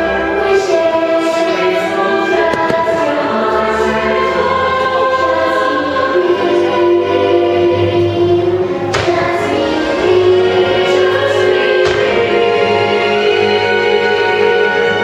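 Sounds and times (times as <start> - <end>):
choir with orchestral music: 0.0 - 15.0
faint pops: 2.4 - 3.3, 8.9 - 9.7, 11.8 - 12.6.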